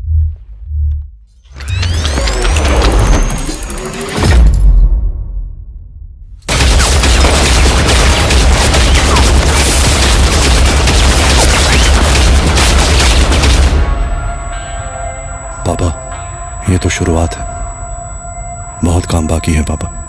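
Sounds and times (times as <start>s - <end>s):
heavy automatic gunfire: 6.5s - 14.0s.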